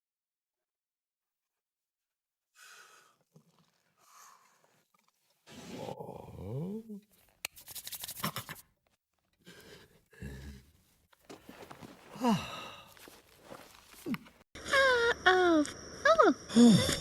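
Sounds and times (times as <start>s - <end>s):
man moaning: 12.1s - 13.0s.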